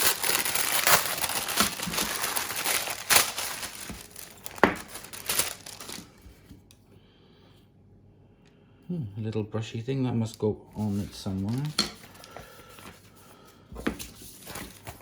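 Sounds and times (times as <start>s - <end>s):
packaging crinkling and rustling: 0.0s - 6.5s, 10.8s - 13.0s, 13.8s - 15.0s.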